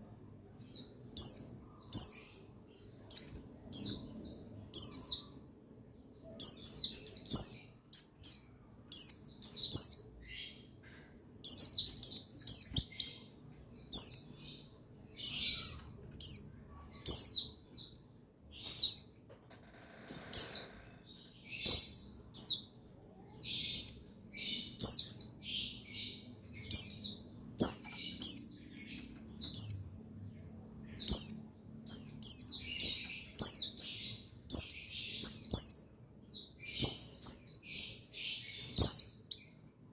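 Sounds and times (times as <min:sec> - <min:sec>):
bird high downward chirps: 0:06.2 - 0:30.0.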